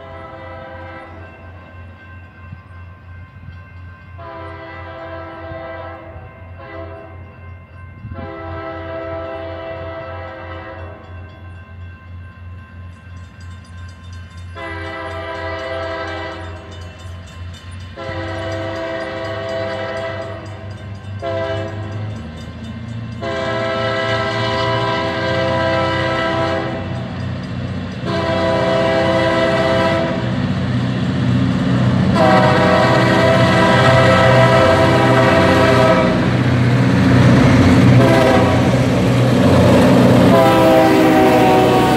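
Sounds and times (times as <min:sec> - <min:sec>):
locomotive air horn blasts: 0:00.0 - 0:01.2, 0:04.2 - 0:07.2, 0:08.1 - 0:11.1, 0:14.6 - 0:16.6, 0:18.0 - 0:20.5, 0:21.2 - 0:22.0, 0:23.2 - 0:27.0, 0:28.0 - 0:30.3, 0:32.1 - 0:36.4, 0:37.8 - 0:41.9
locomotive engine rumble: 0:00.0 - 0:41.9.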